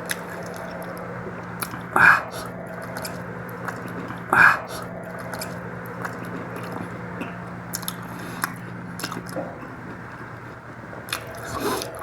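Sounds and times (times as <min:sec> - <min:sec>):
close-up chewing: 0:00.0 - 0:12.0
wet mouth smacking: 0:01.6 - 0:09.5.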